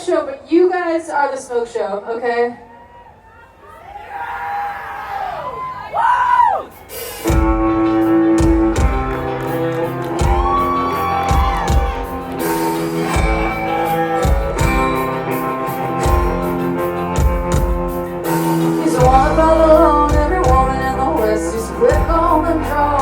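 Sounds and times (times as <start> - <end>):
live band playing: 6.6 - 23.0
guitar: 6.9 - 23.0.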